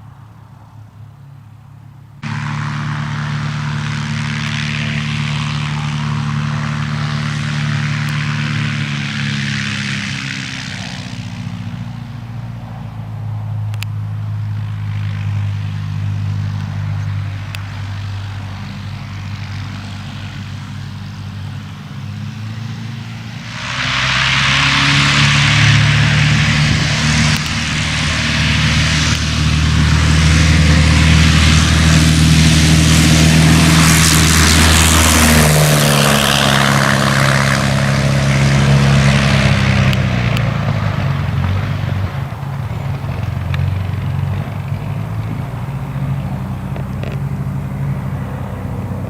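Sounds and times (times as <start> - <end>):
loud engine humming: 0.0 - 49.0
strong rushing noise: 19.1 - 49.0.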